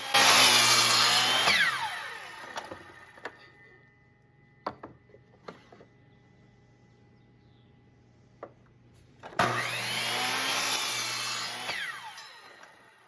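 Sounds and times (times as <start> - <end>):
miter saw cutting wood: 0.0 - 3.4, 9.3 - 13.0
saw blade winding down whine: 0.0 - 3.7, 9.4 - 13.0.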